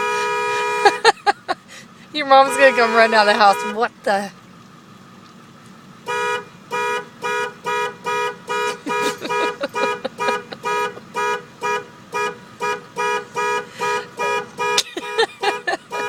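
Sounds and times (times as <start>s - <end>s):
truck horn short blasts: 0.0s - 1.1s, 2.4s - 3.8s, 6.0s - 16.0s.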